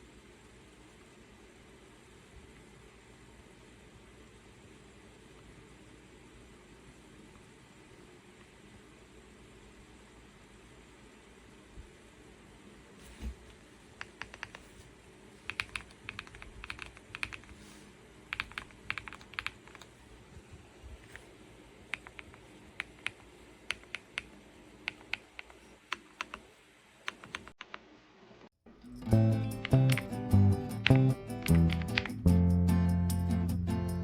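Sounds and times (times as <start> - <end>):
mechanical keyboard typing: 14.0 - 14.7, 15.4 - 17.6, 18.3 - 20.0, 21.9 - 27.8, 29.6 - 30.1, 30.8 - 32.2.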